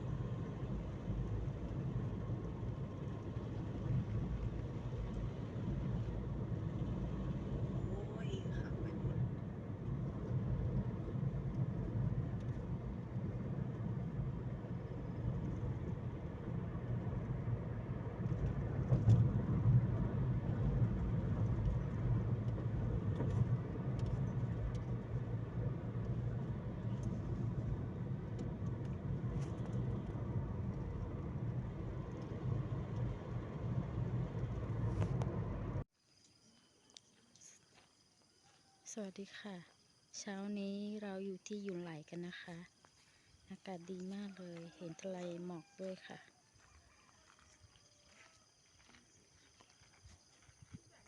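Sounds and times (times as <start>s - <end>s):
car driving rumble: 0.0s - 35.9s.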